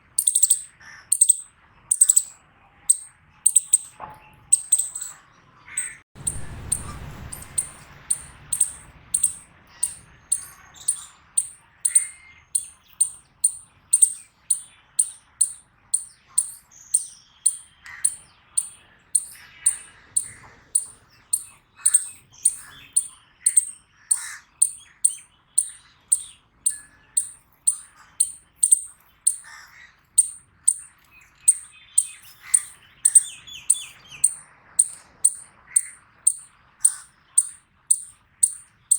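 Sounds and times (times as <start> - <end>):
chipmunk chip call: 0.0 - 5.2, 5.8 - 38.7
faint low chirps: 5.8 - 23.8
low rumble: 6.2 - 10.5.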